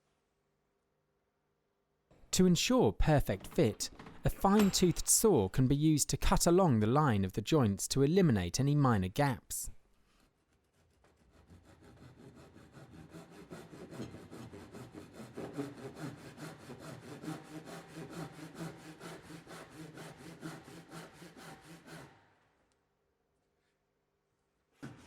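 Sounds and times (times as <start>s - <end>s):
hand saw cutting wood: 10.4s - 22.3s.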